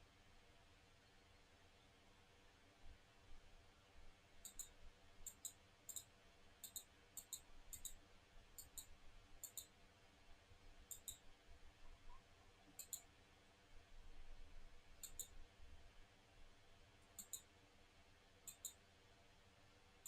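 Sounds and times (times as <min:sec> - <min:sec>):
computer mouse double clicks: 0:05.3 - 0:08.0.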